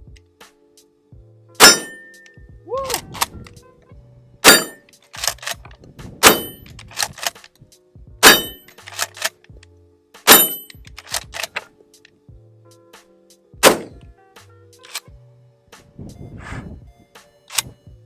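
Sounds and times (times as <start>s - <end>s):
shotgun shots: 1.6s - 2.2s, 4.4s - 5.5s, 6.2s - 6.6s, 8.2s - 9.2s, 10.3s - 10.7s, 13.6s - 14.0s
shotgun pump clacking: 4.6s - 7.5s, 8.2s - 9.4s, 10.3s - 11.7s, 14.8s - 15.1s.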